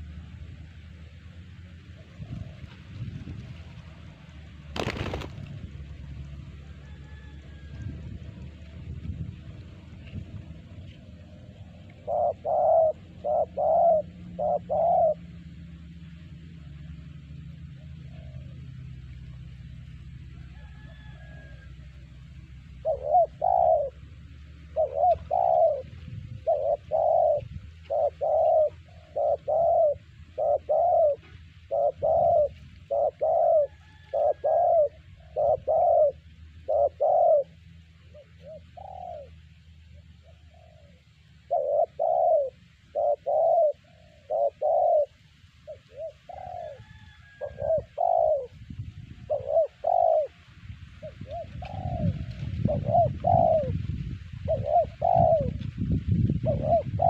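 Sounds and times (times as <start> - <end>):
dove cooing: 3.8 - 8.8, 9.8 - 57.0.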